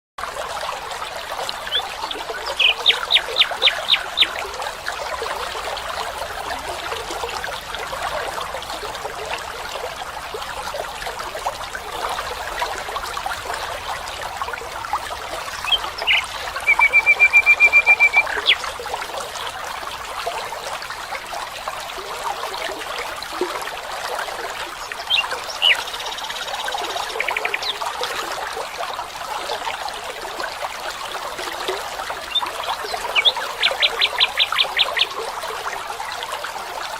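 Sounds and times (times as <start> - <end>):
stream water trickling: 0.2 - 36.9
bird calling: 1.7 - 4.4, 15.6 - 18.6.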